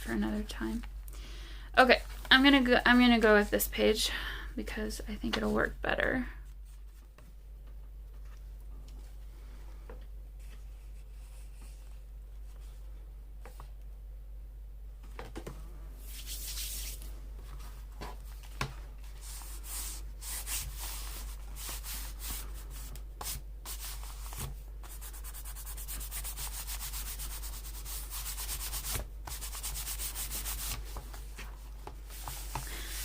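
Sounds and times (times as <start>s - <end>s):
paper rubbed with scratchy strokes: 19.1s - 30.8s.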